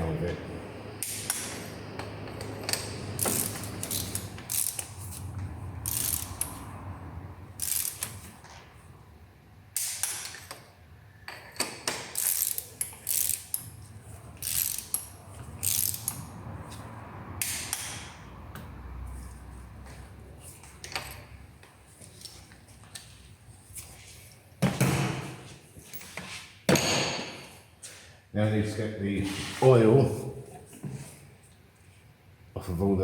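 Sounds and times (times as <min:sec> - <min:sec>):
ratchet wrench clicking: 0:02.7 - 0:06.7, 0:07.6 - 0:08.3, 0:11.9 - 0:13.8, 0:14.4 - 0:16.3.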